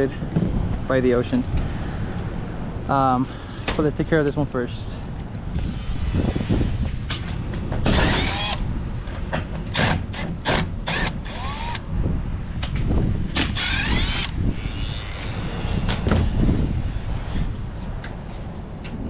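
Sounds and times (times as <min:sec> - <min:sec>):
cordless drill whining: 0:07.9 - 0:08.6, 0:09.7 - 0:11.9, 0:13.4 - 0:14.4.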